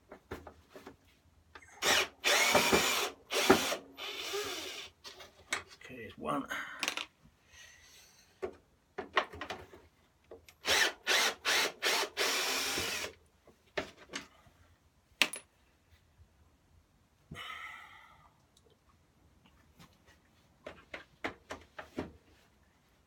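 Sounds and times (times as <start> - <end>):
power drill bursts: 1.8 - 4.9, 10.6 - 13.1.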